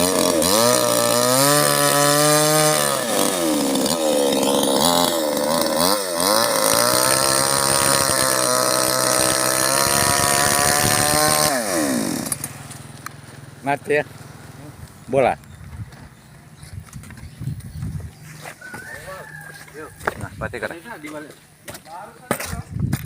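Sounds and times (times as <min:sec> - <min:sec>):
chainsaw cutting wood: 0:00.0 - 0:13.2.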